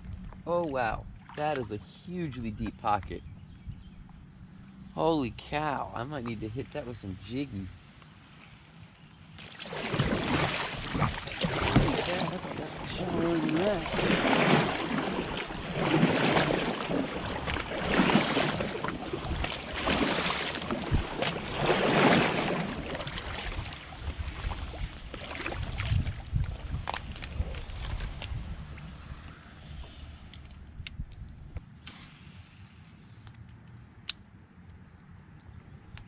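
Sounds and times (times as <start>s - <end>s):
paddle splashing in water: 0.0s - 3.0s, 9.4s - 30.6s.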